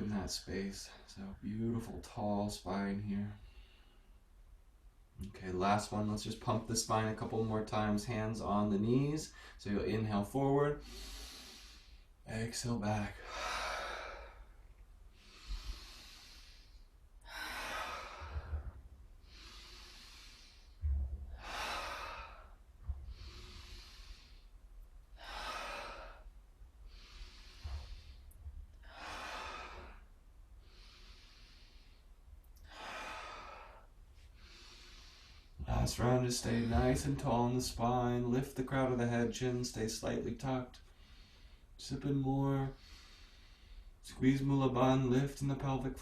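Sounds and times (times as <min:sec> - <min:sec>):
person breathing deeply: 0:10.8 - 0:12.2, 0:13.1 - 0:37.4, 0:42.7 - 0:44.0.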